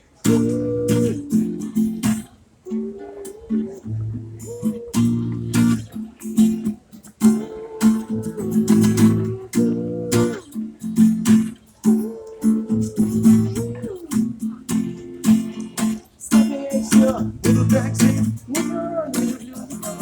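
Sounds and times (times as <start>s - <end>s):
strummed guitar: 0.0s - 20.0s
steady beat: 13.0s - 20.0s
held melody line: 16.3s - 20.0s
bass line: 17.2s - 18.6s.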